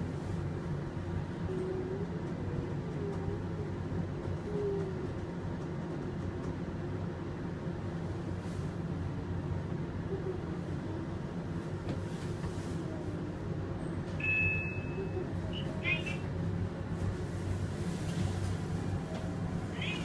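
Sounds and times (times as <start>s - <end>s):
elevator humming: 18.2s - 20.0s.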